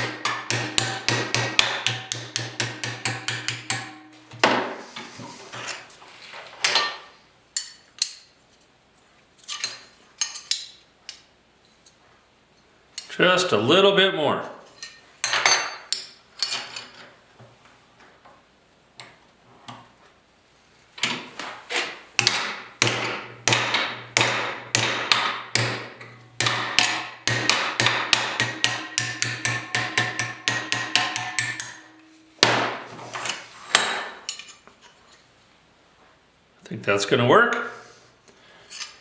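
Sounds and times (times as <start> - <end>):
hammer striking steel: 0.0 - 4.6, 22.2 - 32.9, 33.7 - 34.4.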